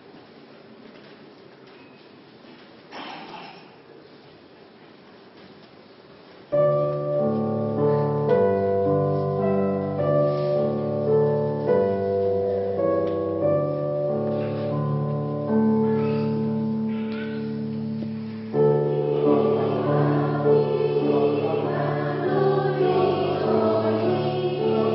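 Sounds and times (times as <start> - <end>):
keyboard playing slow chords: 6.5 - 24.9.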